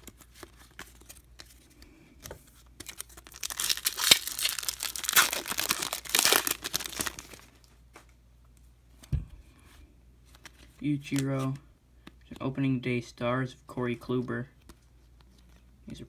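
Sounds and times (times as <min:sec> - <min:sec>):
wrapper tearing and crinkling: 0:02.8 - 0:07.6.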